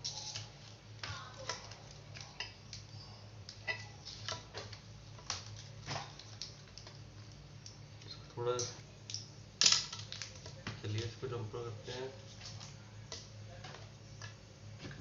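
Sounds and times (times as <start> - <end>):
small tools clicking and tapping: 0.0 - 11.1
steady low hum: 0.0 - 15.0.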